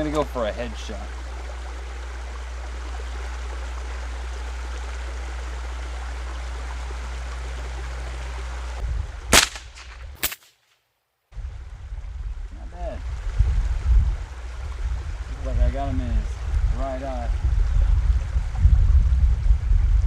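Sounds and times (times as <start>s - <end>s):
rifle shots: 9.3s - 10.6s.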